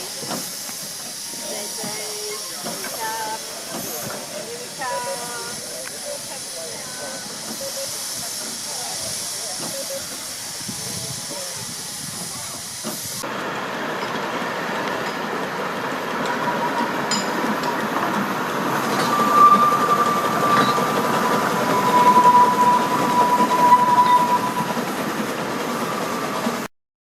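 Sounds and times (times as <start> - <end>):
train rolling on track: 0.0 - 26.7
high wheel squeal: 16.2 - 26.6.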